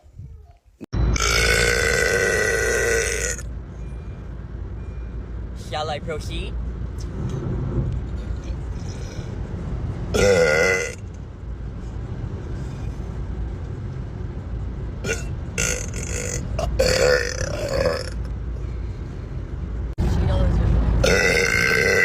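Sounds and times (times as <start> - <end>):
man belching: 1.2 - 3.4, 10.1 - 11.0, 15.0 - 18.2, 21.0 - 22.0.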